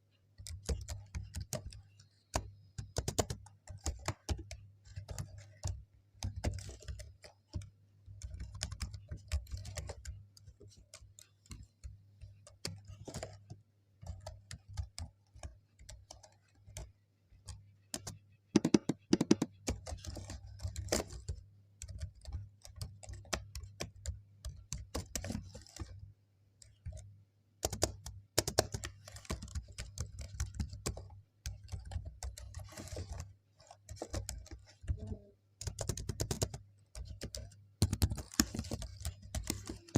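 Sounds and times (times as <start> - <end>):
computer keyboard typing: 0.2 - 39.9.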